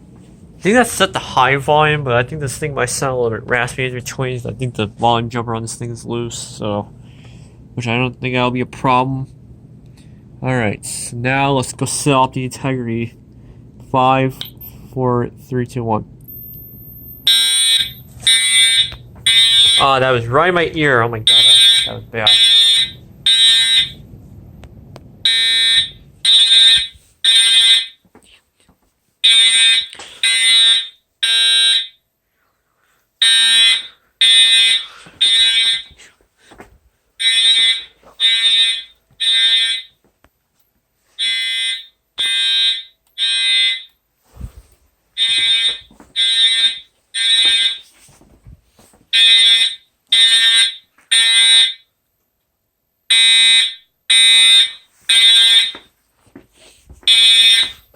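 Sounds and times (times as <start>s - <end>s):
fire alarm horn blasts: 16.3s - 24.0s, 25.2s - 28.0s, 29.2s - 32.0s, 33.2s - 36.0s, 37.2s - 40.0s, 41.2s - 44.0s, 45.2s - 47.9s, 49.1s - 51.9s, 53.0s - 55.9s, 57.1s - 57.9s.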